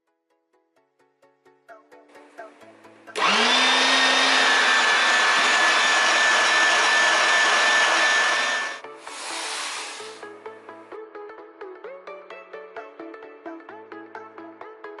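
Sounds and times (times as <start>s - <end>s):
electric meat grinder motor: 3.2s - 10.3s.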